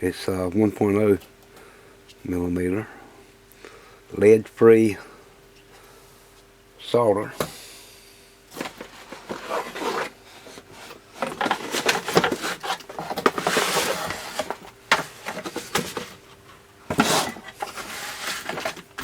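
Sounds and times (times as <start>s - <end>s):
packaging rustling: 8.5s - 19.0s.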